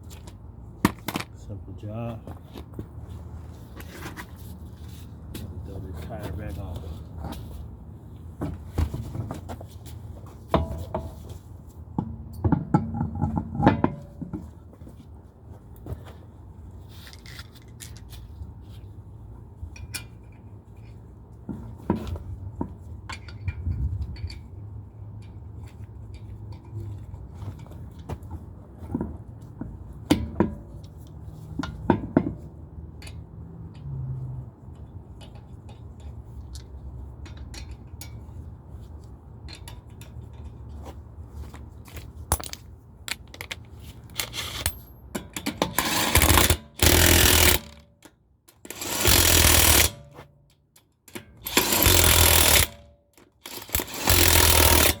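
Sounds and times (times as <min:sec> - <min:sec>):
metal clinks and knocks: 0:41.8 - 0:50.2.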